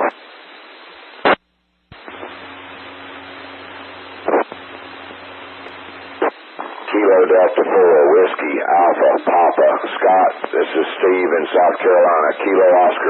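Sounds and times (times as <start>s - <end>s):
radio static hiss: 0.0s - 13.0s
faint low hum: 0.3s - 8.2s.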